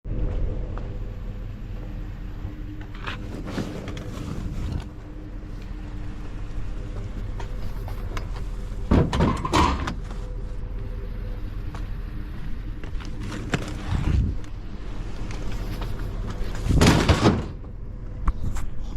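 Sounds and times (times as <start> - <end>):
vehicle engine and road hum: 0.0 - 18.9
loud clatter: 7.4 - 10.0, 15.3 - 17.7.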